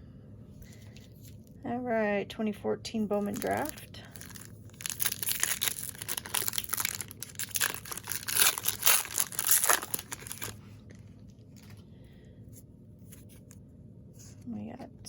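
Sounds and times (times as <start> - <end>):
foil wrapper tearing and crinkling: 3.2 - 10.6.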